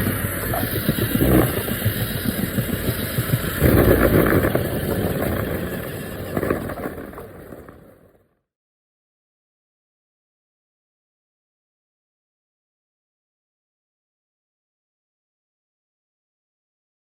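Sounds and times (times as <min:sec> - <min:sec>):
road noise: 0:00.0 - 0:08.3
vehicle rumbling: 0:00.0 - 0:08.3.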